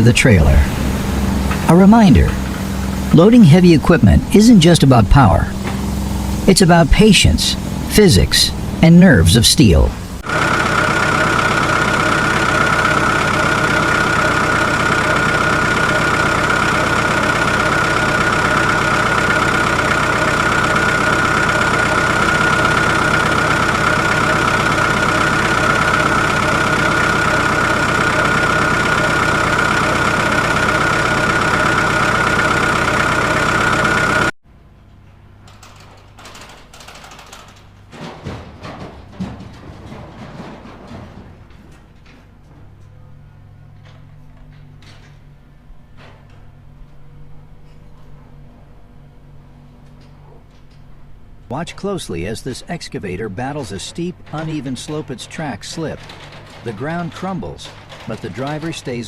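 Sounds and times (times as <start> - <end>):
high whine: 0.0 - 34.3
heavy machine engine running: 0.0 - 34.4, 35.6 - 59.0.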